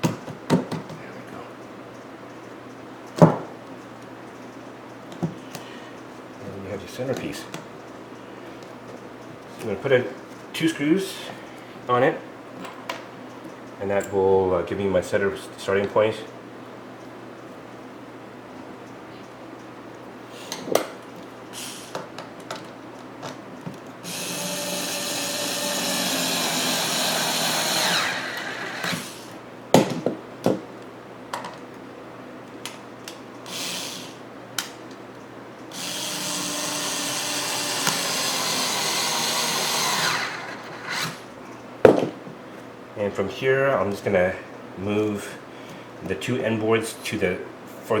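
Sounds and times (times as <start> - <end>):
power drill driving screws: 21.6 - 22.0, 24.0 - 29.4, 33.5 - 34.2, 35.7 - 41.3
boards and tool clicking: 21.6 - 30.6, 35.8 - 41.2.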